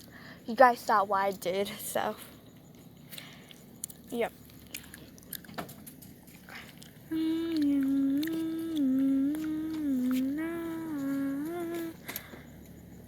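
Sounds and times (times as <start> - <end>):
person humming a tune: 7.1 - 12.1.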